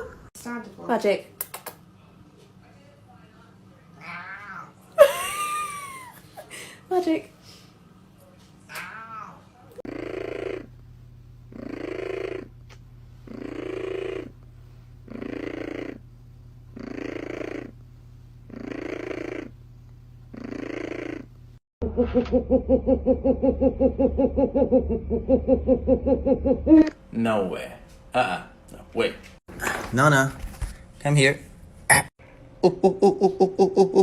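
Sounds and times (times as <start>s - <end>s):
cat purring: 9.8s - 10.8s, 11.4s - 14.4s, 15.0s - 16.1s, 16.7s - 17.8s, 18.5s - 19.6s, 20.3s - 21.4s.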